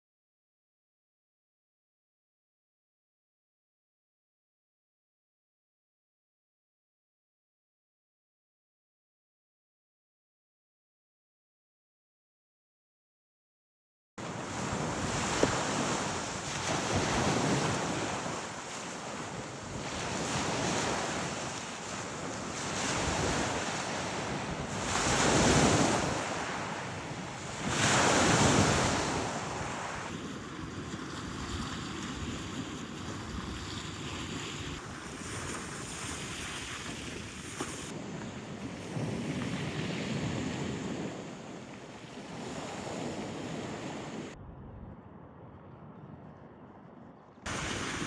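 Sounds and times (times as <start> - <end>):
wind buffeting microphone: 14.2 - 48.0.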